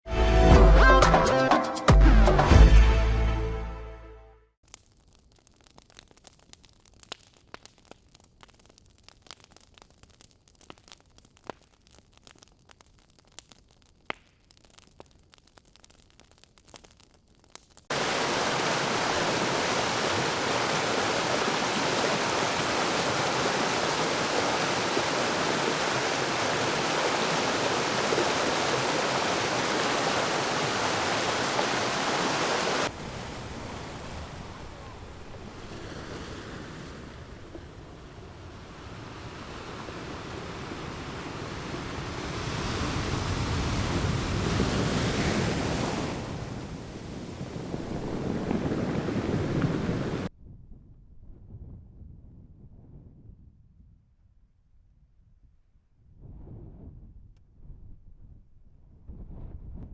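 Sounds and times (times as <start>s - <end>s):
faint crackling with clicks: 4.6s - 17.9s
loud static hiss: 17.9s - 33.0s
rushing noise: 17.9s - 35.6s.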